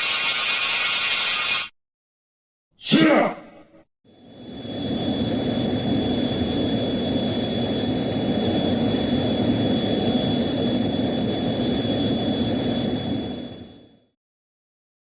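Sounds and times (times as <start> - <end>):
jet-like rush of noise: 4.1 - 14.2.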